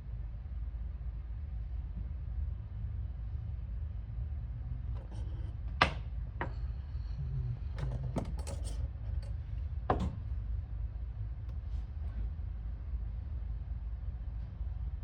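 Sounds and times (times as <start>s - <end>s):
low steady hum: 0.0s - 15.0s
objects knocking and clicking: 7.7s - 10.3s.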